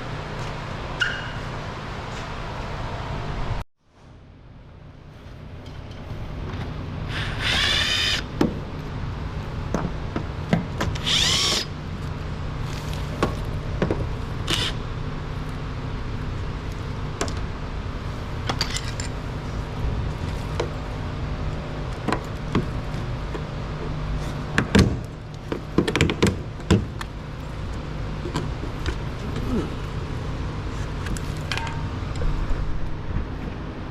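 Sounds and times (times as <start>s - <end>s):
steady low hum: 0.0s - 33.9s
power drill whining: 7.1s - 8.3s, 11.0s - 11.7s.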